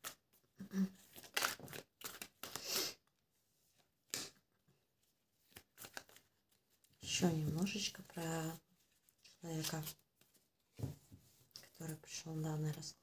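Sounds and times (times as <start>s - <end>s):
cards being shuffled: 0.9s - 2.8s, 5.4s - 6.9s.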